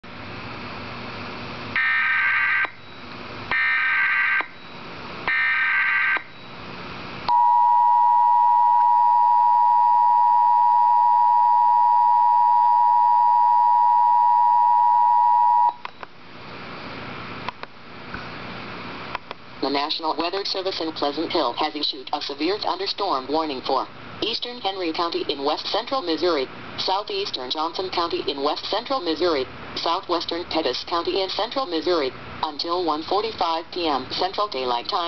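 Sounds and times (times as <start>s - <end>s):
two-tone attention signal: 7.3s - 15.8s.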